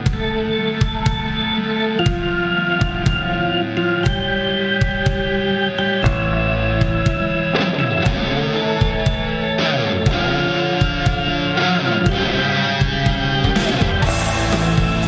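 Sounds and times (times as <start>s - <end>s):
rock guitar chords: 0.0s - 15.0s
drum hits: 4.1s - 15.0s.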